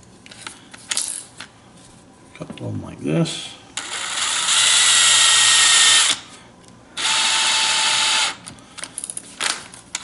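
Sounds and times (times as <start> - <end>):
power drill running: 3.8 - 6.2, 7.0 - 8.4.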